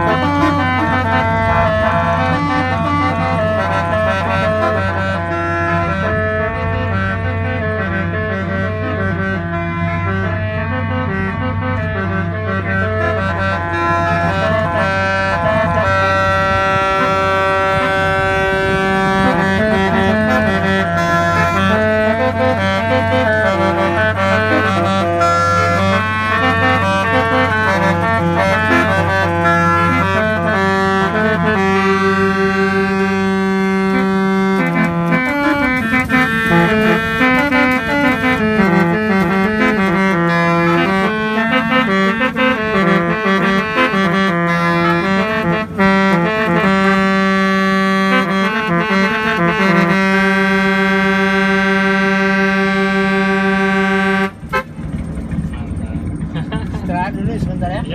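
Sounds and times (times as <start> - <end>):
musical car horn: 0.0 - 55.4.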